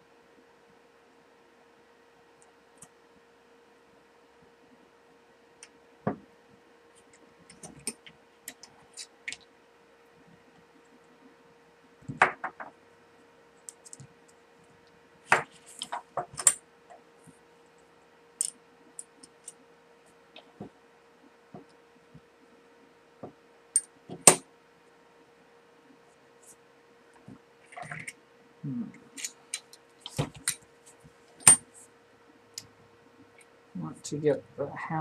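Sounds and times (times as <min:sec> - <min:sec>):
faint steady hum: 0:00.0 - 0:35.0
metal parts and tools clinking: 0:31.4 - 0:31.6.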